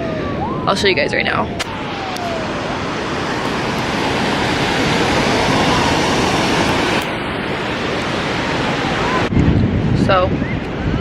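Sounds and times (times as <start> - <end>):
ocean surf washing ashore: 0.0 - 11.0
wind on microphone: 0.0 - 11.0.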